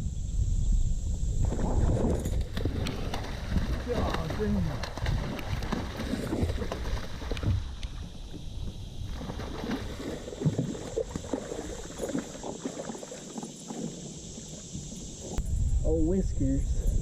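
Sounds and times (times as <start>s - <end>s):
water sloshing: 2.1s - 15.4s.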